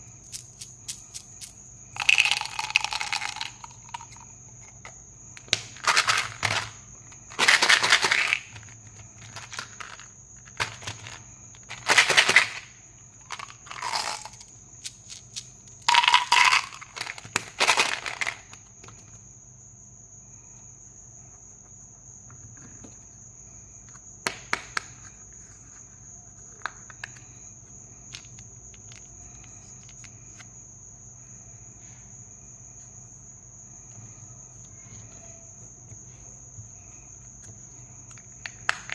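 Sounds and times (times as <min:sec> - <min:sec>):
candy packaging crinkling: 0:05.7 - 0:18.5.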